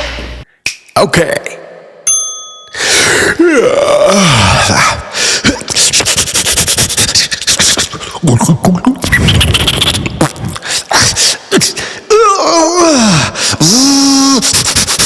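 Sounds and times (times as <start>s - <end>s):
beatboxer making cartoon effects: 4.6s - 12.0s, 13.4s - 15.0s
fast run of mouth clicks: 5.6s - 8.4s.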